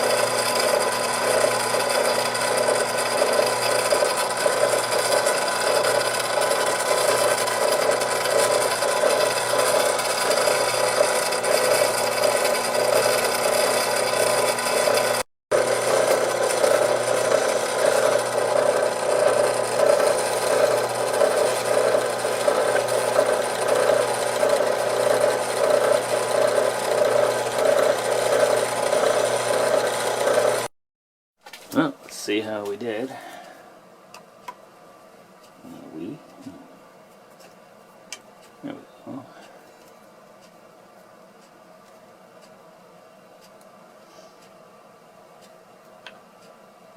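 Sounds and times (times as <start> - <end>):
power tool grinding plastic: 0.0 - 30.7.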